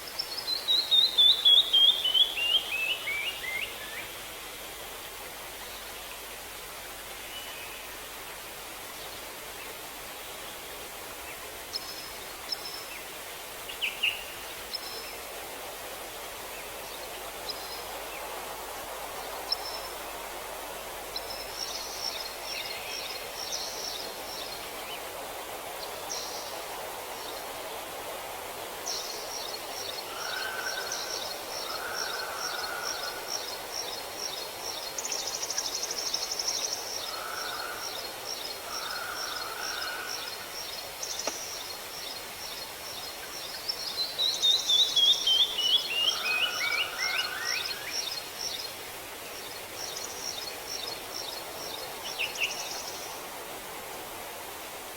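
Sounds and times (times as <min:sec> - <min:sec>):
steady rushing hiss: 0:00.0 - 0:54.9
birds calling: 0:29.9 - 0:33.6, 0:37.0 - 0:41.8.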